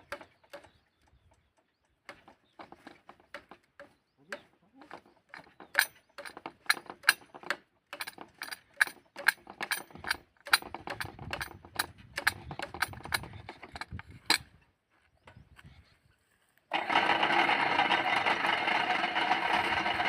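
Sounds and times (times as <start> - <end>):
metallic clicks and taps: 4.8 - 14.5.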